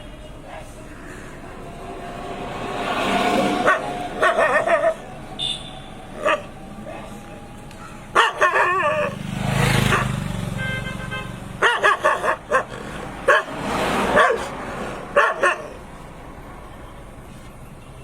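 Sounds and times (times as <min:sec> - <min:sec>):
rushing noise: 0:00.0 - 0:08.2
dog barking: 0:03.3 - 0:05.1, 0:06.1 - 0:10.2, 0:11.6 - 0:15.8.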